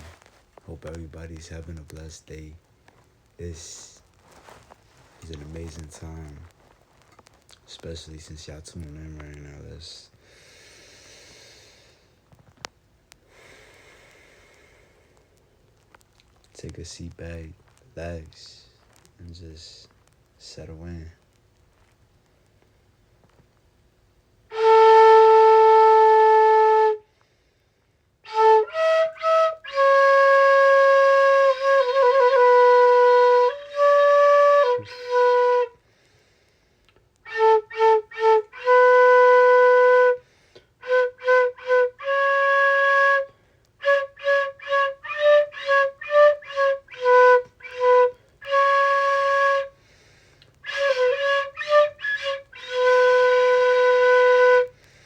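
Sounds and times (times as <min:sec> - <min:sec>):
solo flute melody: 0:24.5 - 0:27.0, 0:28.3 - 0:35.8, 0:37.2 - 0:40.2, 0:40.8 - 0:49.8, 0:50.6 - 0:54.8.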